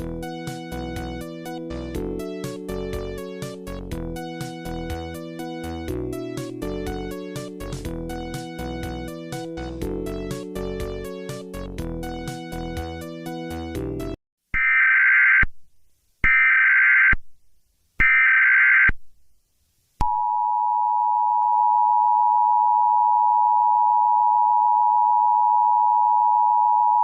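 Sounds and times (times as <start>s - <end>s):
music track: 0.0s - 14.2s.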